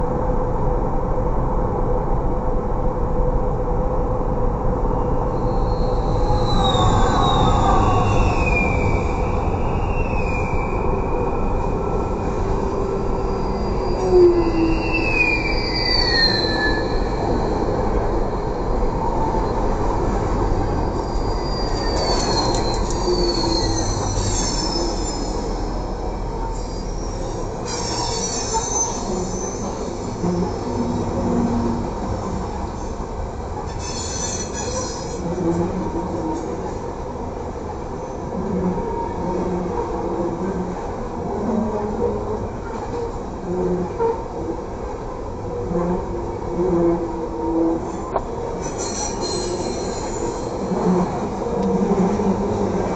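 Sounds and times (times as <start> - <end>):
train cars rumbling: 0.0 - 52.9
train wheel squeals: 4.9 - 36.8, 47.3 - 52.9.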